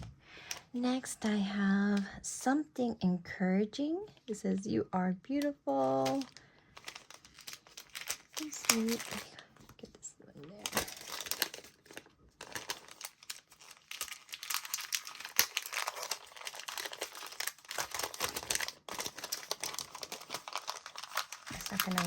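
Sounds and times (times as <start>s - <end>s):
wrapping paper crinkling and tearing: 5.7s - 22.0s.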